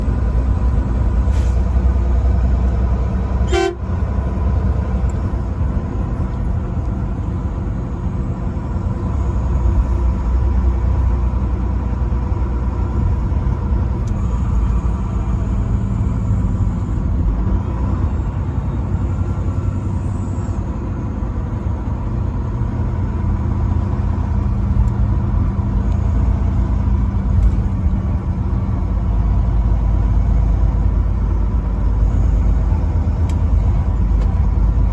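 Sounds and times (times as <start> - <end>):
vehicle low rumble: 0.0 - 34.9
horn-like tones: 3.4 - 3.9.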